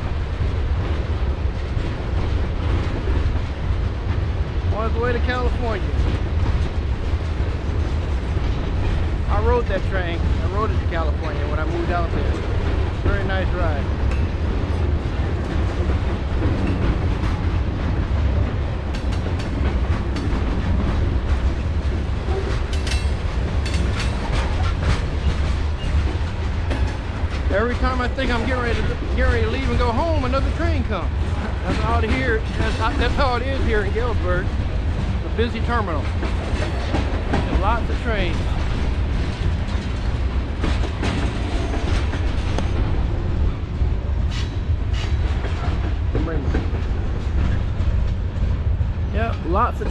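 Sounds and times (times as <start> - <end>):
train rumbling past: 0.0 - 49.9
wheels clacking over rail joints: 0.0 - 49.9.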